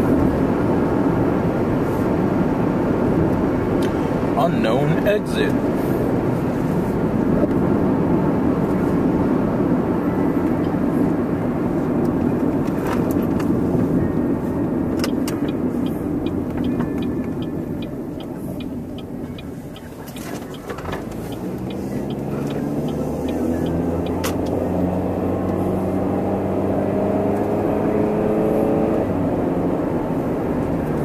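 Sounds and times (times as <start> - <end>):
car engine running: 0.0 - 31.0
regular ticking: 15.0 - 24.2.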